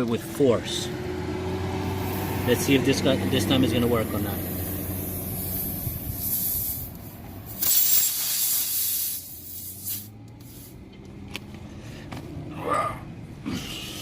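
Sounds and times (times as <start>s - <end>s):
air hissing from a tyre: 1.8s - 2.6s, 4.1s - 10.9s.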